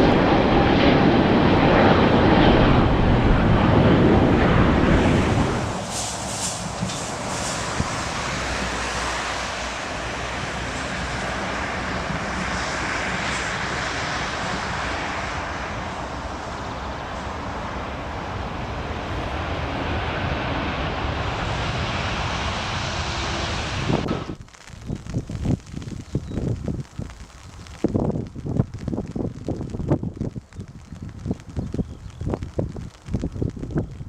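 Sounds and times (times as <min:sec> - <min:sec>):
jet engines running: 0:00.0 - 0:24.4.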